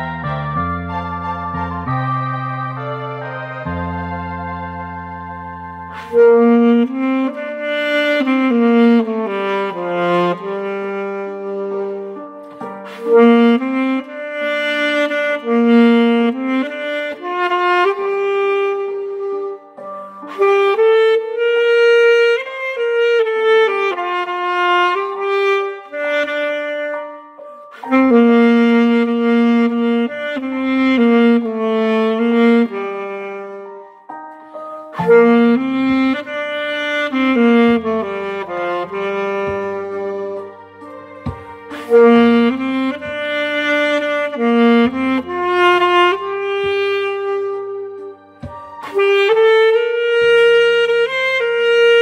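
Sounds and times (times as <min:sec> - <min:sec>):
backing track with bass line: 0:00.0 - 0:12.0, 0:34.9 - 0:52.0
solo wind instrument melody: 0:00.0 - 0:52.0.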